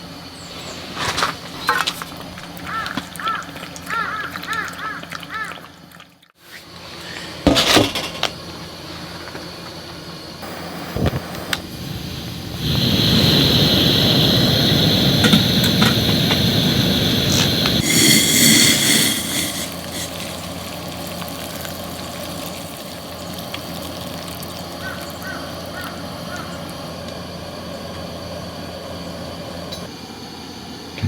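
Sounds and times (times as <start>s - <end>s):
bird calling: 2.6s - 5.6s, 24.8s - 26.8s
steady rumble: 10.4s - 21.3s
high steady squeal: 10.4s - 22.6s.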